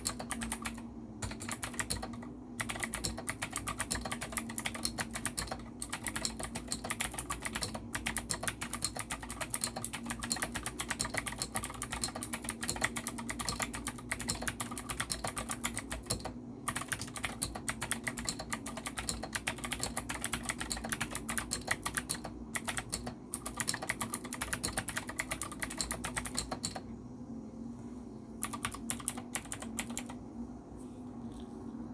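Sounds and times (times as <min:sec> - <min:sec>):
fast mechanical keyboard typing: 0:00.0 - 0:26.8, 0:28.4 - 0:30.2.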